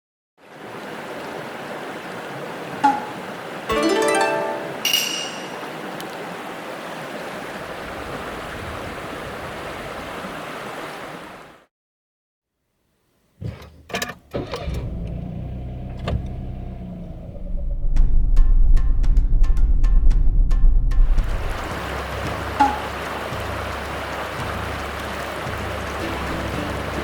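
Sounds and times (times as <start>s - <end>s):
mountain stream rushing: 0.4s - 11.7s, 21.2s - 27.0s
low steady rumble: 16.5s - 22.2s.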